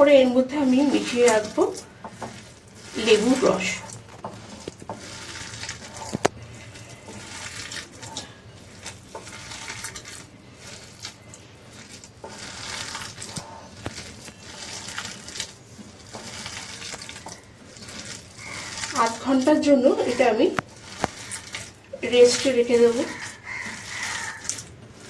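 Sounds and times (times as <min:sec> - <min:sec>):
hands squishing minced meat: 0:00.2 - 0:25.0.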